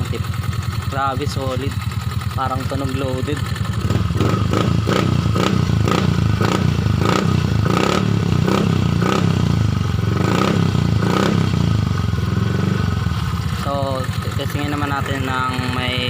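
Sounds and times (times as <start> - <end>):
scooter engine revving: 0.0 - 16.0.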